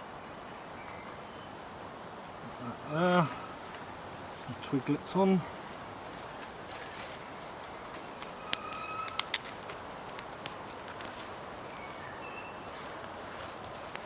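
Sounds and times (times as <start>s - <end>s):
dry twigs cracking in campfire: 5.6s - 14.0s.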